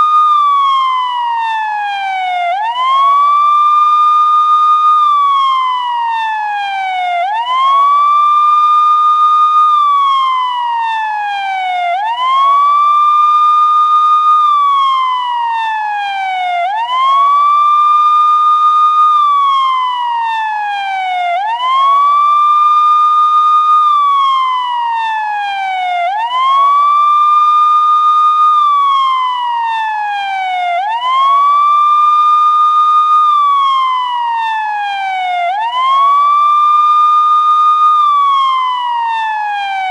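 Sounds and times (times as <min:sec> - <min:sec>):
police siren wailing: 0:00.0 - 0:39.9.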